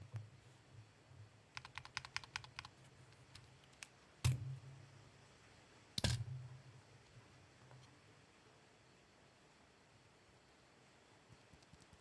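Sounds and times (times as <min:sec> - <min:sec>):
mechanical keyboard typing: 0:01.6 - 0:03.9.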